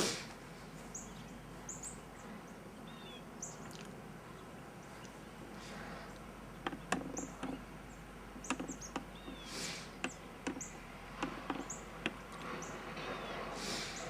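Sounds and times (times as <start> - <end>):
small birds chirping: 0.7 - 14.0
sharp taps and knocks: 6.6 - 7.6, 8.4 - 13.2.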